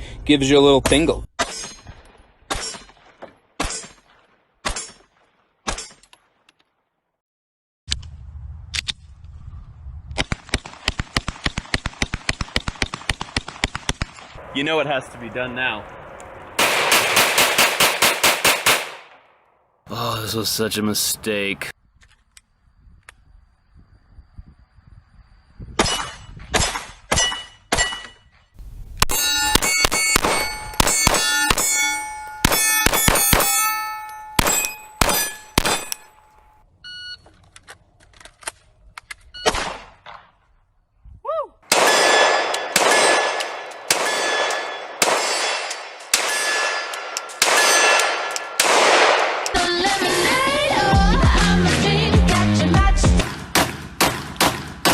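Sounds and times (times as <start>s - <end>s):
bullets clanging on steel targets: 1.4s - 3.0s, 27.1s - 28.3s, 29.0s - 36.6s, 41.7s - 48.8s
pistol shots: 16.6s - 19.5s, 29.0s - 36.2s, 39.4s - 40.2s, 41.7s - 49.5s, 53.5s - 54.9s.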